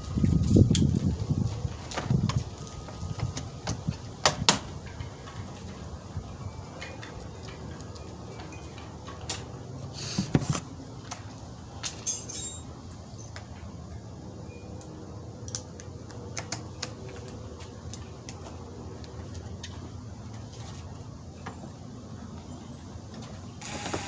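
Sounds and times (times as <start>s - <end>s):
metallic jingle: 11.8s - 12.7s.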